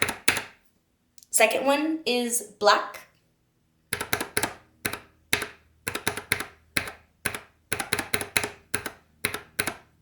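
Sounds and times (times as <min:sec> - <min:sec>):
keyboard switch clacking: 0:00.0 - 0:00.6, 0:03.9 - 0:10.0.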